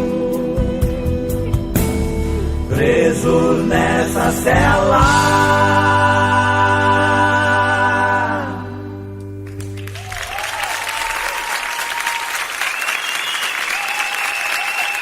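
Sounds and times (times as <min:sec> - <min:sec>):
audience applause: 0:09.4 - 0:15.0.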